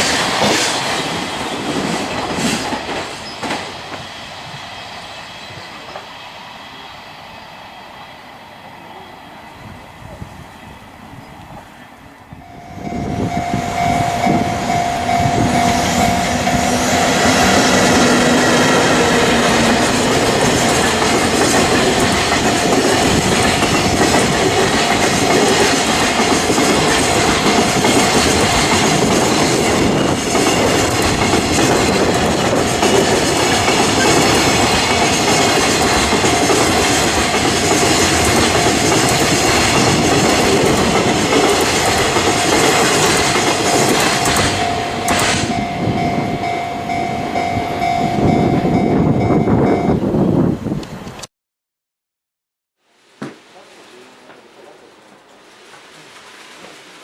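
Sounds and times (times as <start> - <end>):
train wheels clattering: 0.0 - 6.2, 14.3 - 45.7
thin steady tone: 12.4 - 17.5.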